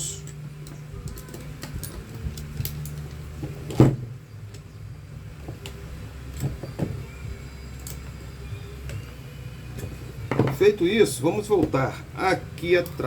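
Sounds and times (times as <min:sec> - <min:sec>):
steady low hum: 0:00.0 - 0:13.0
knocks of fan motor parts: 0:09.8 - 0:10.7.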